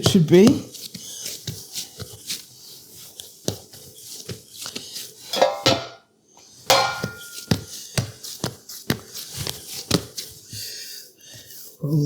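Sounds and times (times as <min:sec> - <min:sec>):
metal bread pan clanking: 0:05.3 - 0:06.0, 0:06.7 - 0:07.6.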